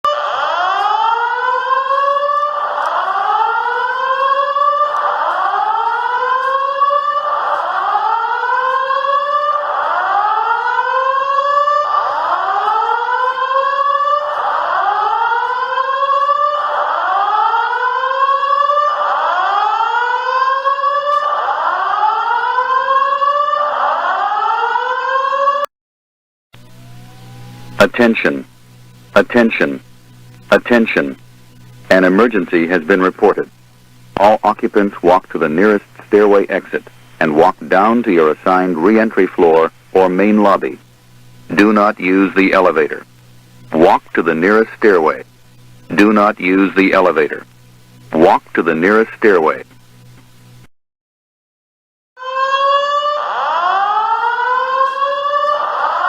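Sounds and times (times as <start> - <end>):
fire alarm whoop tone: 0.1 - 25.7, 26.6 - 28.0, 52.2 - 56.0.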